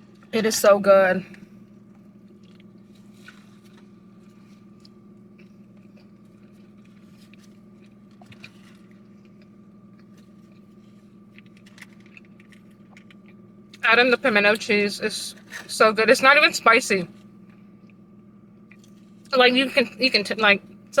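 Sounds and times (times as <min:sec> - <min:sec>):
low hum: 0:00.0 - 0:21.0
person chewing and crunching: 0:02.1 - 0:13.8, 0:18.6 - 0:19.3.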